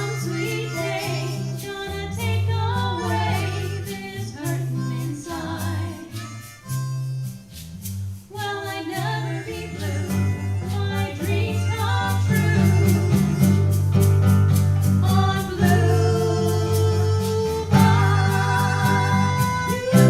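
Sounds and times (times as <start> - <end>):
guitar low notes: 0.0 - 20.0
small jazz band playing: 0.0 - 20.0
percussion hits: 10.1 - 20.0.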